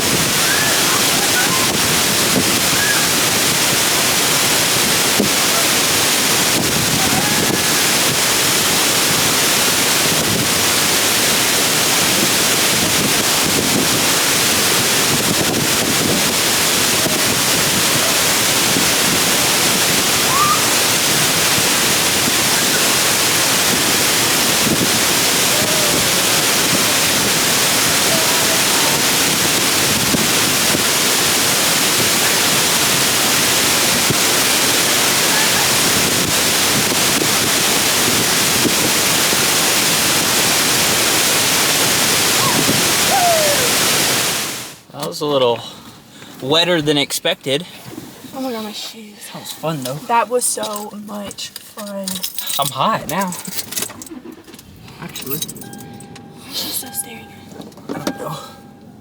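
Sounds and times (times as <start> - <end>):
waterfall: 0.0 - 44.9.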